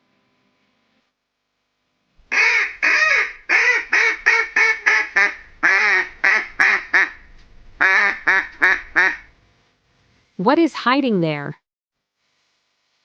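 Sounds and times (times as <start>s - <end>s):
duck quacking: 2.3s - 7.2s, 7.8s - 9.3s.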